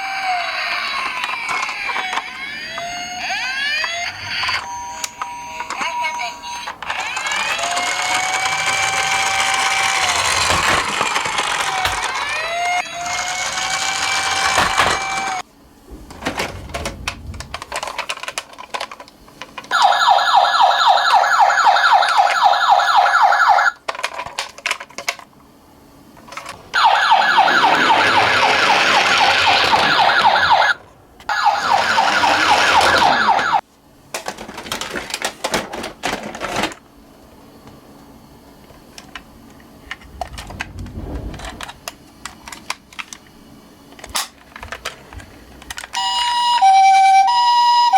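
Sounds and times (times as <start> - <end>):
toy siren warbling wail: 0.0 - 15.4, 19.7 - 23.8, 26.7 - 33.6, 46.0 - 47.9
plastic toy cars clattering: 0.2 - 2.8, 6.6 - 15.4, 16.1 - 20.0, 23.8 - 25.3, 26.2 - 26.6, 27.7 - 30.7, 31.6 - 36.8, 39.9 - 43.3, 44.0 - 46.3.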